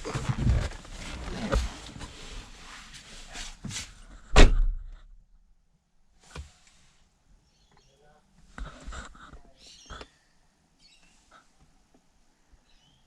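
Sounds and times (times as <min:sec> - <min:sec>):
shuffling: 0:00.0 - 0:04.3
loud heavy thump: 0:04.3 - 0:04.9.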